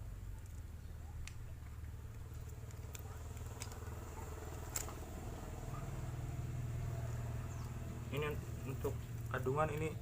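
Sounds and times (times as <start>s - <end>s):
plastic lures clicking: 0.4s - 5.0s.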